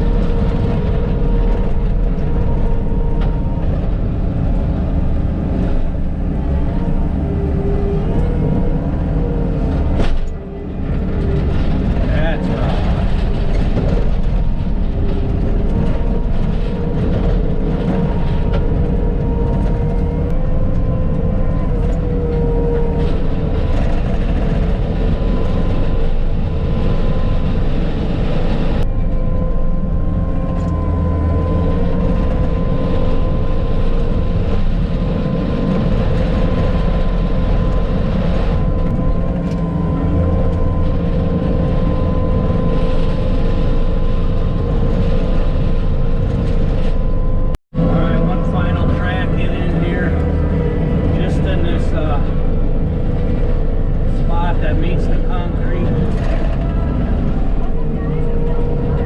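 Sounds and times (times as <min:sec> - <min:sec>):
loader engine drone: 0:00.0 - 0:59.0
steady whine: 0:00.0 - 0:59.0.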